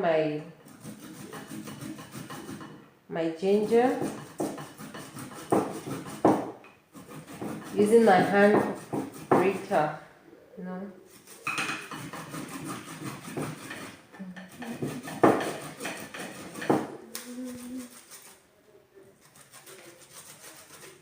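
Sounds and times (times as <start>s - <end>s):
ginger grated on hand grater: 0.7s - 2.7s, 3.5s - 6.4s, 7.0s - 9.8s, 11.1s - 18.4s, 19.2s - 21.0s
sharp knocks: 4.0s - 6.6s, 8.4s - 9.6s, 14.5s - 17.0s.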